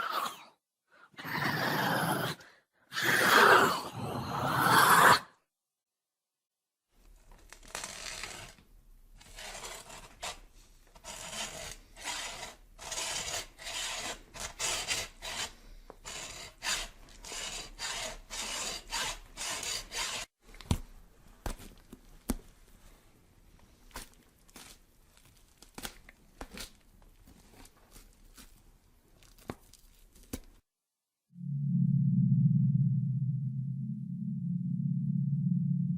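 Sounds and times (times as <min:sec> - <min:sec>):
rough rasping strokes: 0:09.2 - 0:20.3.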